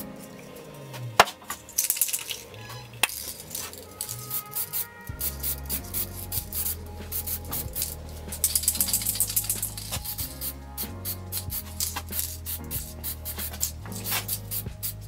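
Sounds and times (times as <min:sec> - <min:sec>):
bass line: 0:02.9 - 0:15.0
background music with beat: 0:03.1 - 0:15.0.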